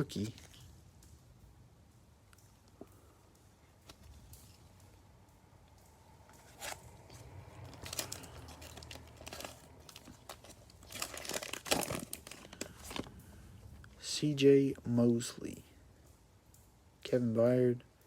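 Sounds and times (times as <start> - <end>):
plastic wrapper crinkling and tearing: 6.2 - 13.9.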